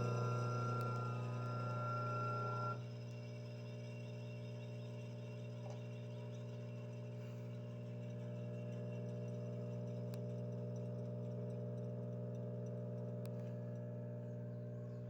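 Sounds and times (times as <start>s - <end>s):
washing machine spinning: 0.0s - 10.0s.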